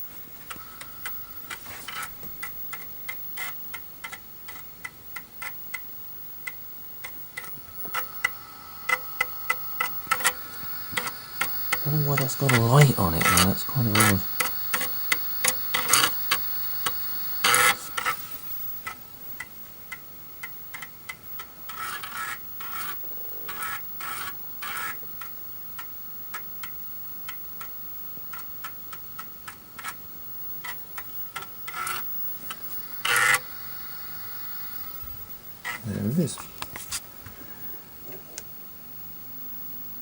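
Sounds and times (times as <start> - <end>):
floppy drive clicking and seeking: 0.0 - 37.0.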